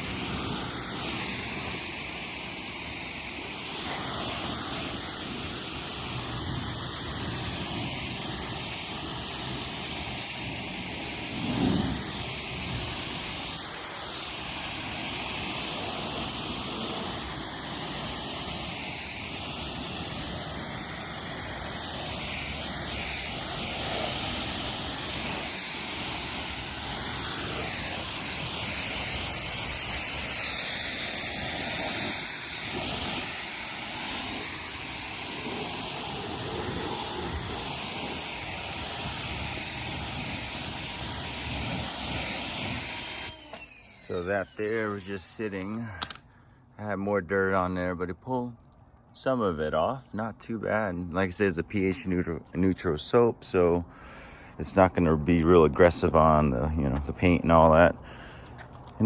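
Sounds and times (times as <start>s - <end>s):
pressure washer spraying water: 0.0s - 45.6s.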